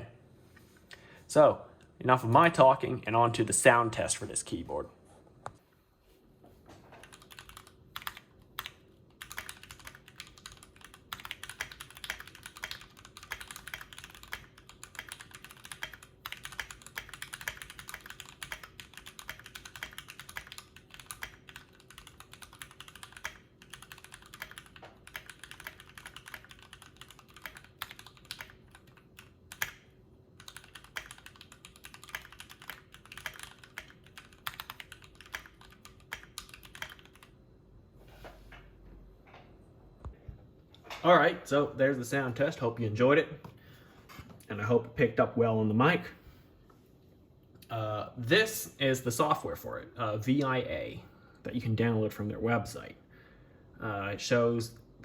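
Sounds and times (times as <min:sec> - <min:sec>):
typing on mechanical keyboard: 0:07.0 - 0:37.3.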